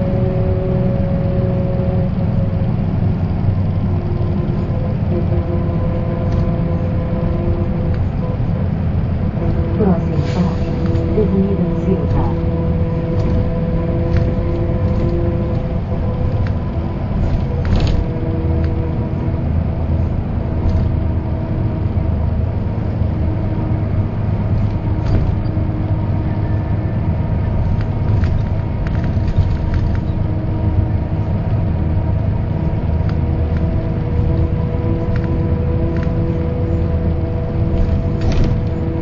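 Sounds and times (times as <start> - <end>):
diesel bus engine rumble: 0.0 - 39.0
steady whining tones: 0.0 - 39.0
small rattles and clicks: 27.6 - 30.4.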